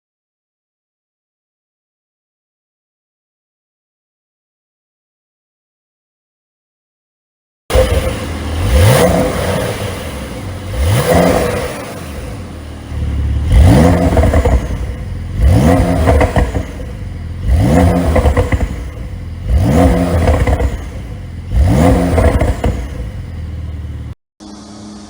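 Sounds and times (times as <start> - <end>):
exhaust pops and crackles: 7.7 - 23.2
car engine revving: 7.7 - 25.0.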